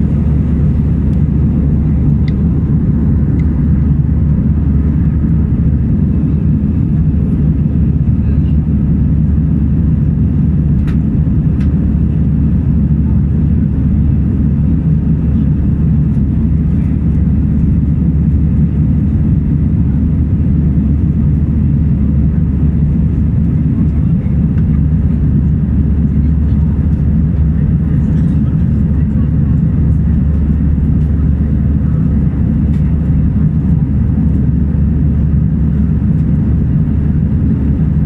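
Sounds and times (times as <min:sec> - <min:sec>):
airliner engine rumble in flight: 0:00.0 - 0:38.0.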